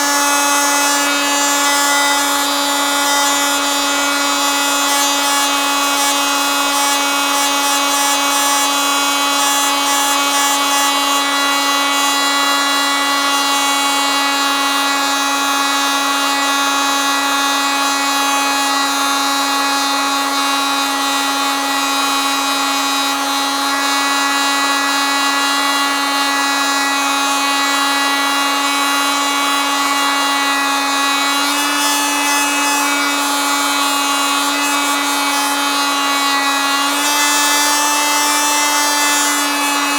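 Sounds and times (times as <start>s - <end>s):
oscillating multitool buzzing: 24.1s - 39.9s.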